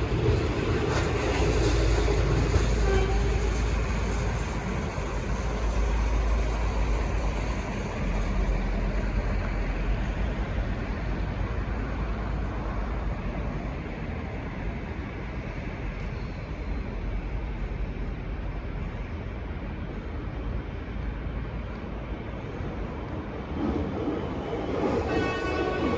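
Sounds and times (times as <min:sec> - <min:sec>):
diesel train rumbling: 0:00.0 - 0:25.9.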